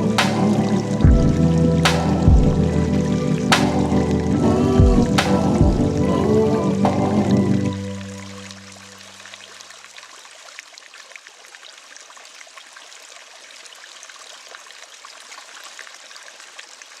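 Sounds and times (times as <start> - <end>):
low notes of a beat: 0.0 - 7.5
waterfall rushing and splashing: 0.0 - 9.6.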